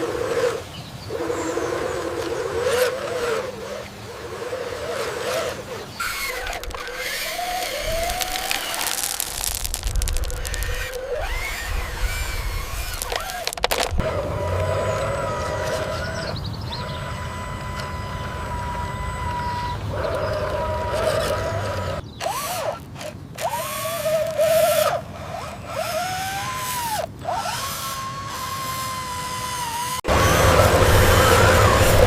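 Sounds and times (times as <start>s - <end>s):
small electric motor whining: 0.0s - 32.0s.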